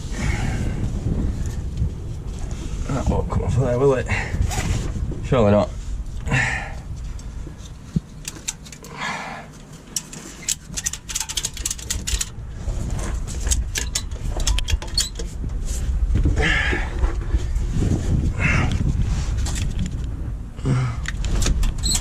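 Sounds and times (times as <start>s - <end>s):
steady low rumble: 0.0s - 22.0s
metal tools clinking and rattling: 7.1s - 12.4s, 13.0s - 15.4s.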